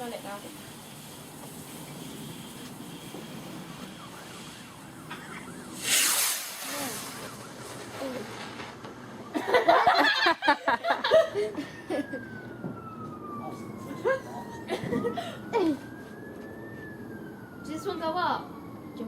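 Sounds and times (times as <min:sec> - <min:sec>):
firework crackles: 0:00.0 - 0:09.3
firework hissing whoosh: 0:00.0 - 0:09.3
firework whistles: 0:00.0 - 0:09.3
long falling whistle: 0:01.9 - 0:19.0.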